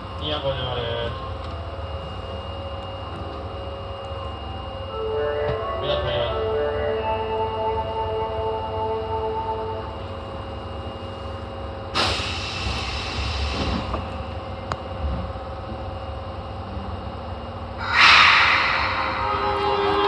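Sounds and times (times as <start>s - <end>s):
subway car equipment hum: 0.0s - 20.0s
hissing air rush: 17.8s - 20.0s.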